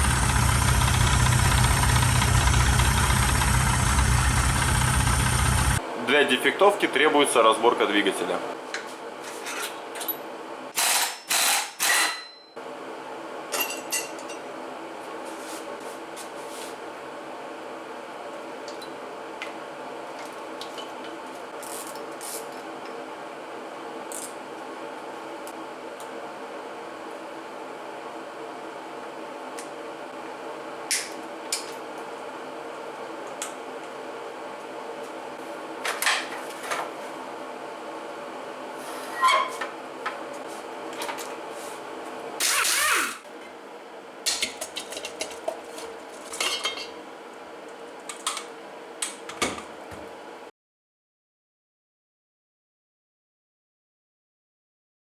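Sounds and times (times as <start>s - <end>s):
steady background hum: 0.0s - 10.8s.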